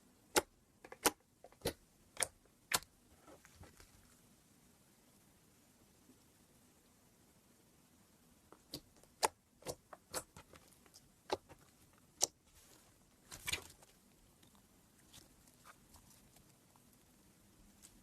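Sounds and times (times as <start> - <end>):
crackling squelch: 8.5 - 18.0.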